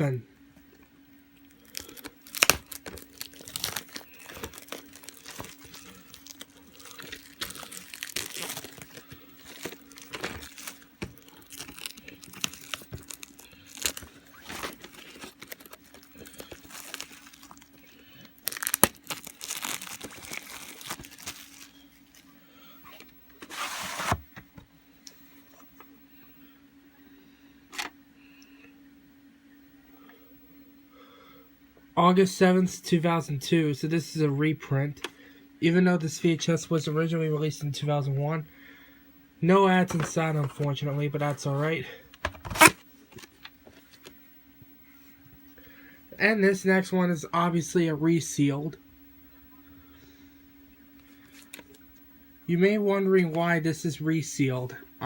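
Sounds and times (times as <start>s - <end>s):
faint steady hum: 0.0s - 55.0s
plastic shrink wrap crinkling: 1.4s - 24.2s, 39.8s - 44.2s
plastic wrap tearing: 1.6s - 22.3s, 42.2s - 43.5s.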